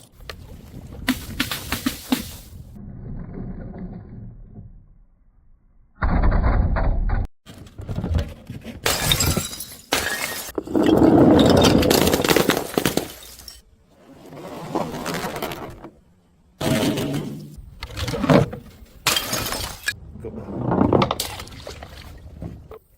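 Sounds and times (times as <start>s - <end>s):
glass shards scattering: 8.9s - 10.6s, 11.4s - 13.6s, 19.0s - 20.0s
glass bottles smashing: 8.9s - 13.6s, 19.0s - 20.0s.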